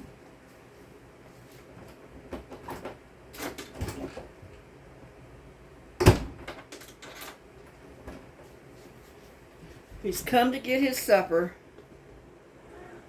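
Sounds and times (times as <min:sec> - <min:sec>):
clicks and rattles: 0:06.4 - 0:07.4.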